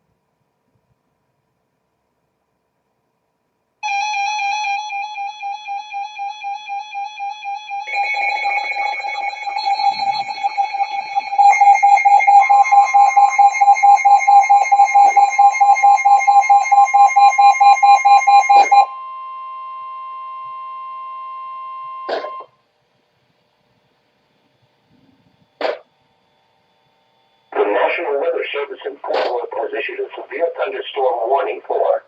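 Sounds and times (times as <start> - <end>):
pulsing electronic alarm beeps: 3.8 - 22.5.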